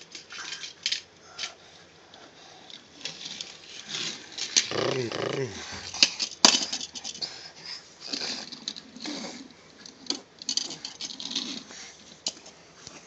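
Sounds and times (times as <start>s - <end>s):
voice imitating car engine: 4.7s - 6.0s.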